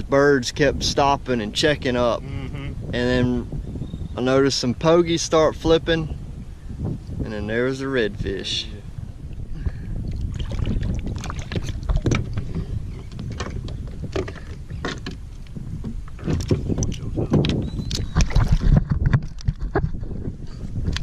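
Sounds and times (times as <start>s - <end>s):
wind rumble on microphone: 0.0s - 21.0s
knocks and clatter on boat: 10.3s - 21.0s.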